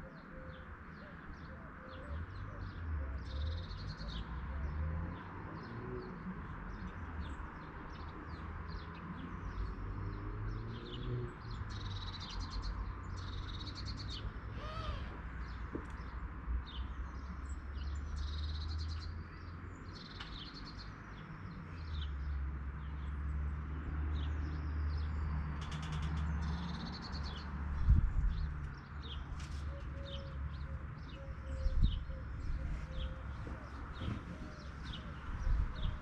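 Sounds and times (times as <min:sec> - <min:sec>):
birds chirping: 0:24.1 - 0:36.0.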